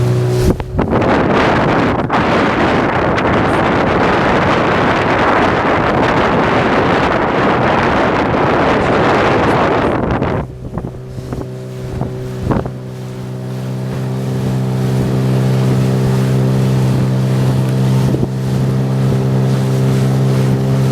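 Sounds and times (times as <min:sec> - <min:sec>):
engine hum: 0:00.0 - 0:20.9
wind buffeting microphone: 0:00.0 - 0:20.9
light water splashes: 0:09.5 - 0:20.9.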